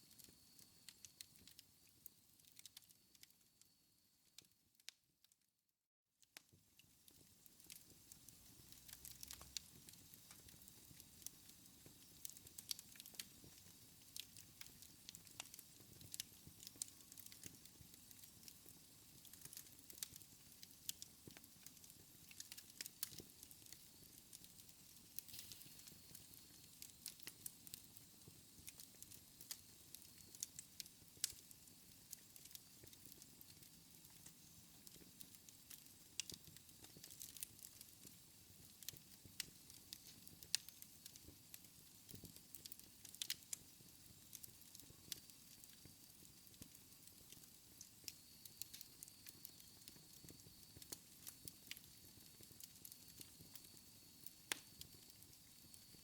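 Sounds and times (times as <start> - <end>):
wood fire crackling: 0.0 - 3.4, 6.3 - 56.0.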